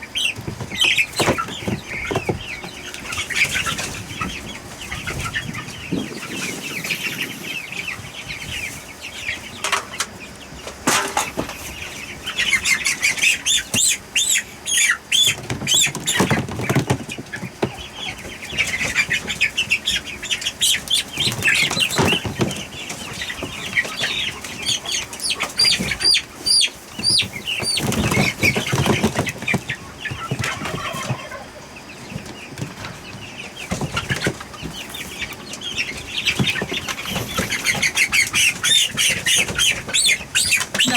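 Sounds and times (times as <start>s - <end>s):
chicks peeping and chirping: 0.0s - 40.9s
wings flapping: 3.0s - 8.8s.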